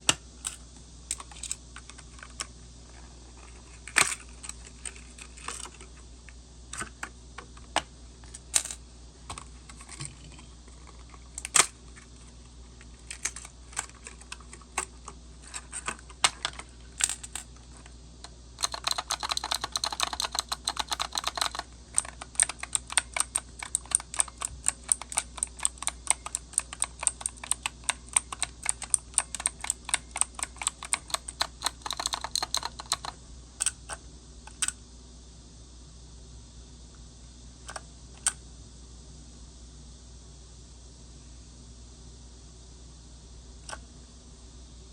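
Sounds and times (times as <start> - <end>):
typing on computer keyboard: 18.6 - 33.8.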